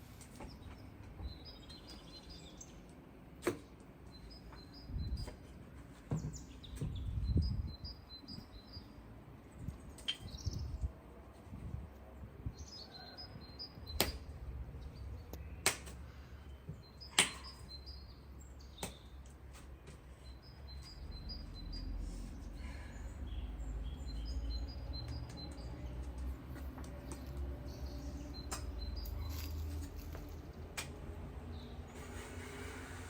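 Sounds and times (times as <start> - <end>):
small birds chirping: 0.0 - 3.0, 4.0 - 9.0, 9.6 - 10.9, 12.4 - 30.7.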